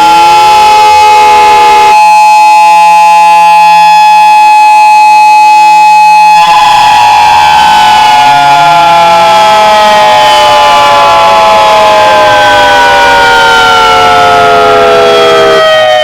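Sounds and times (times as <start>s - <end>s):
sliding siren tones: 0.0s - 16.0s
held chord of tones: 6.4s - 15.7s.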